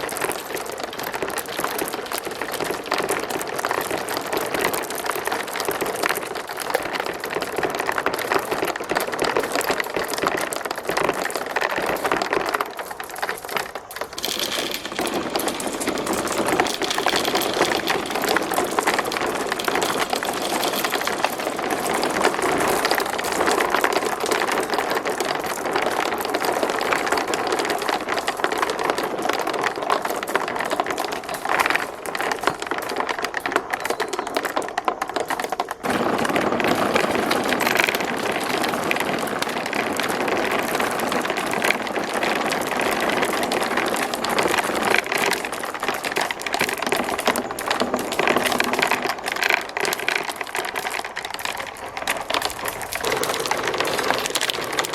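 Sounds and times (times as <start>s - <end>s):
marbles rattling down tracks: 0.0s - 54.9s.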